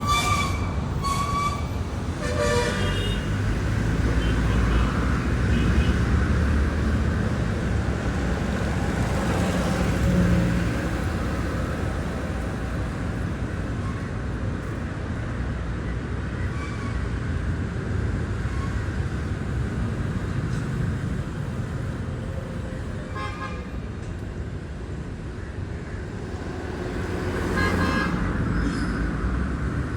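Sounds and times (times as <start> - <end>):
vehicle horns tooting: 0.0 - 3.4, 4.1 - 6.0, 27.4 - 28.4
road traffic: 0.0 - 29.9.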